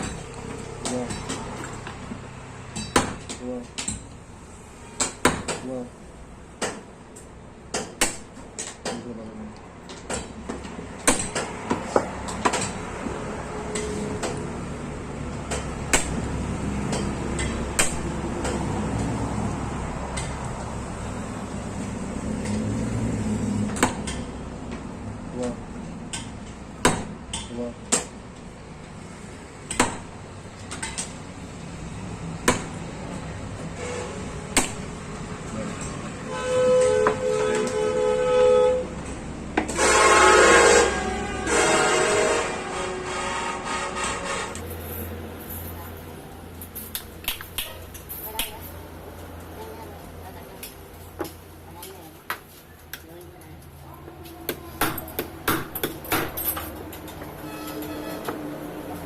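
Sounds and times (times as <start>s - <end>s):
hammer striking metal punch: 26.1s - 28.2s, 32.4s - 32.8s, 34.5s - 34.9s, 54.5s - 56.6s.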